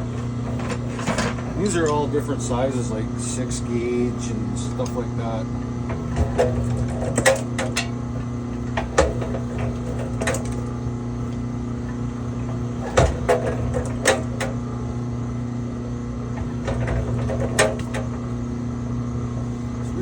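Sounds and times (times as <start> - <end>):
wire-stripping machine humming: 0.0 - 20.0
scrap wire clicks and knocks: 5.9 - 11.4, 16.4 - 18.2.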